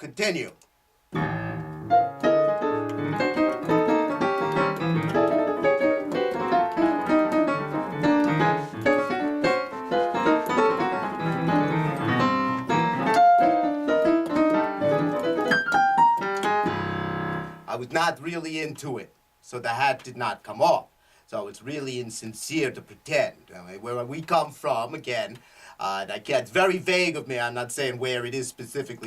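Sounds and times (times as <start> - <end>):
piano tone clusters: 1.1 - 17.8.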